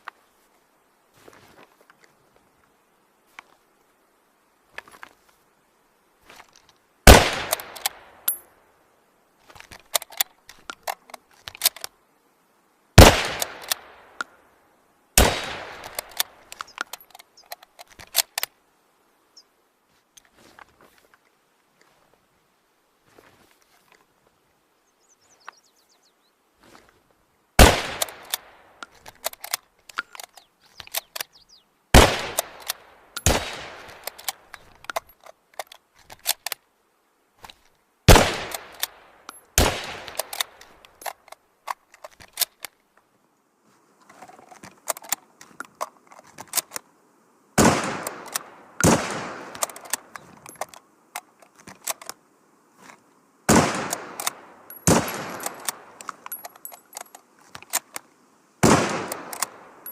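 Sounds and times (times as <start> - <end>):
sharp shot-like cracks: 7.1 - 8.2, 13.0 - 14.2, 15.2 - 16.4, 27.6 - 28.7, 32.0 - 34.1, 38.1 - 39.0, 39.6 - 40.6, 47.6 - 49.8, 53.5 - 56.0, 58.6 - 59.8
small clicks and rattles: 28.0 - 31.4, 44.0 - 46.9, 49.6 - 52.2, 53.9 - 58.1.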